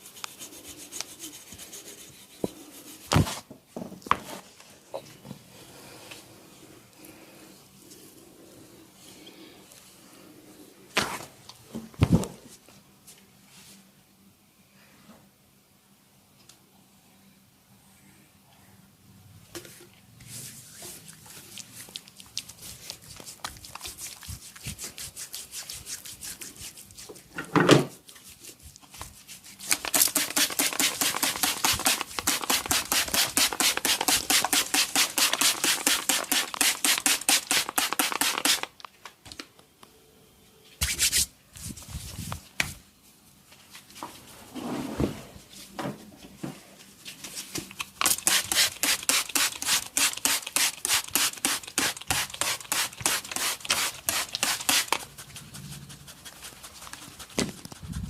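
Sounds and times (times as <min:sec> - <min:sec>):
hands rubbing skin: 0:00.0 - 0:03.1, 0:20.3 - 0:27.3, 0:47.2 - 0:58.0.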